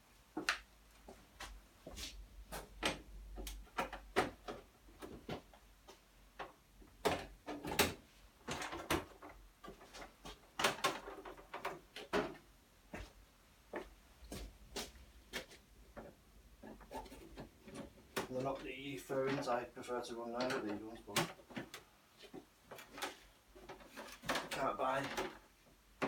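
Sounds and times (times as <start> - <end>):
plastic panels clicking and rattling: 2.5 - 12.5, 15.4 - 19.5, 20.2 - 26.0.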